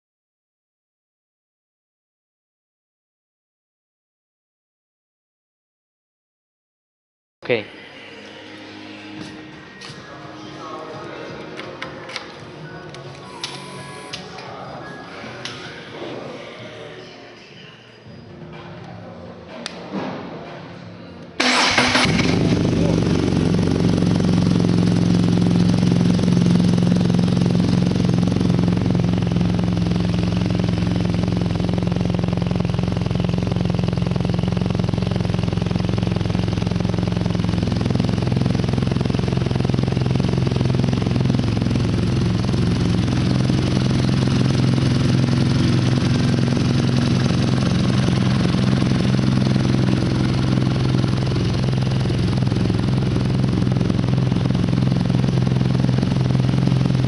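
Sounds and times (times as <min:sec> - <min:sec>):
motorcycle engine idling: 0:21.4 - 0:57.0.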